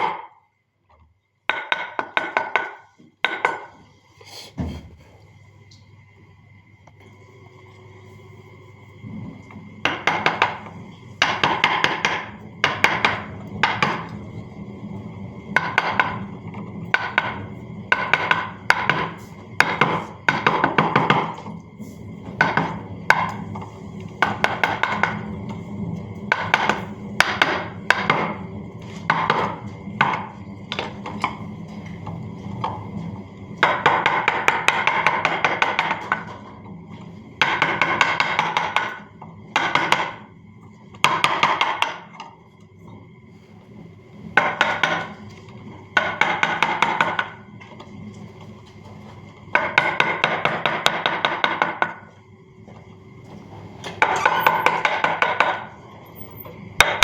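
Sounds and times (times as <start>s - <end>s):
mallet tapping chisel into wood: 1.5s - 3.7s.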